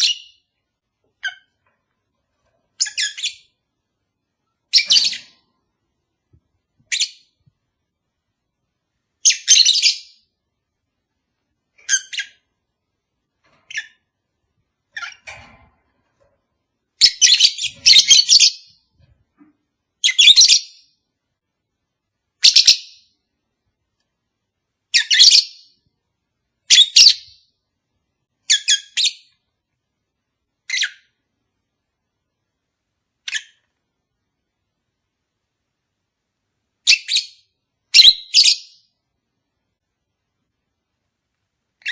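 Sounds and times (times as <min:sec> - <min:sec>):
lovebird chirps and squawks: 0:00.0 - 0:00.5, 0:01.2 - 0:01.6, 0:02.8 - 0:03.6, 0:04.7 - 0:05.5, 0:09.2 - 0:10.2, 0:11.8 - 0:12.5, 0:13.7 - 0:14.0, 0:14.9 - 0:15.5, 0:17.0 - 0:18.8, 0:20.0 - 0:20.9, 0:22.4 - 0:23.1, 0:24.9 - 0:25.8, 0:26.7 - 0:27.5, 0:28.5 - 0:29.4, 0:30.6 - 0:31.2, 0:33.2 - 0:33.7, 0:36.8 - 0:38.9.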